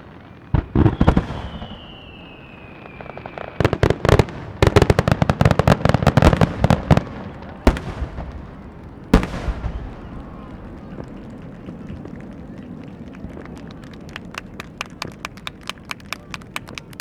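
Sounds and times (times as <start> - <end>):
firework whistle falling: 0.0 - 4.8
firework bangs and crackles: 0.0 - 17.0.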